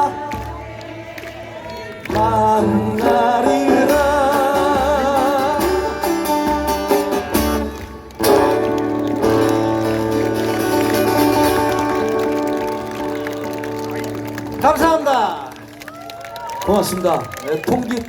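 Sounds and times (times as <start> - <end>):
person singing with vibrato: 0.0 - 6.9
acoustic guitar: 0.0 - 15.8.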